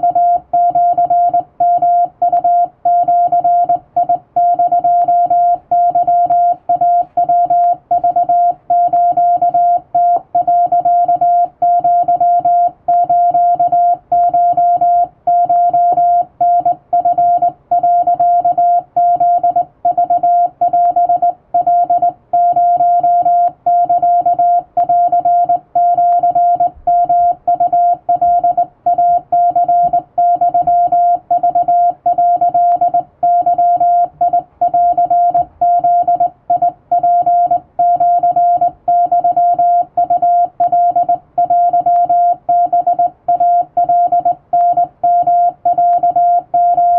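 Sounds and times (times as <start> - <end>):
morse code beeps: 0.0 - 46.9.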